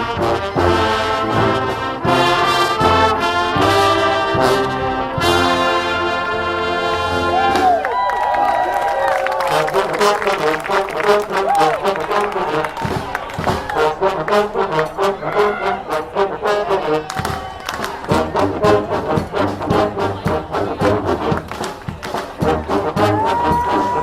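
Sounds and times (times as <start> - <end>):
brass marching band playing: 0.0 - 24.0.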